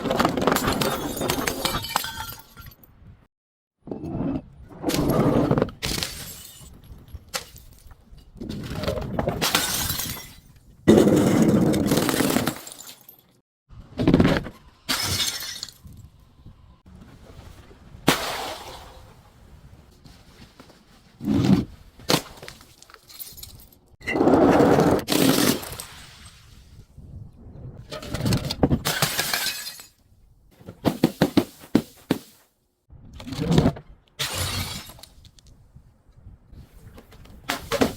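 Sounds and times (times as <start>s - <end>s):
glass bottles breaking: 0.4s - 2.8s, 5.8s - 6.8s, 9.4s - 10.5s, 11.2s - 13.2s, 14.9s - 16.0s, 28.8s - 30.0s.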